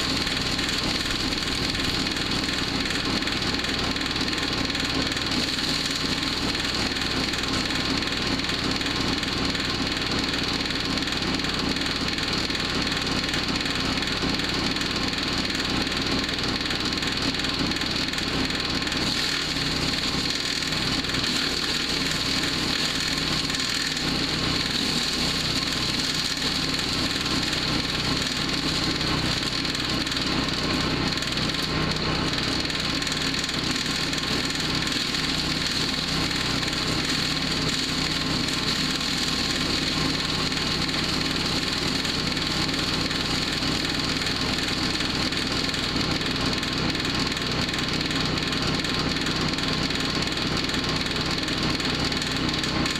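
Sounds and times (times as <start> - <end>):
wood chipper engine running: 0.0 - 52.9
wood being chipped: 5.1 - 7.1, 17.8 - 31.7, 32.4 - 45.8.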